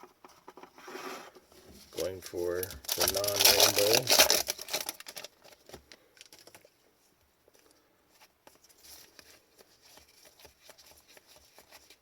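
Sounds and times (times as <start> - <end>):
trading cards rustling and ticking: 2.0 - 6.8, 7.5 - 12.0.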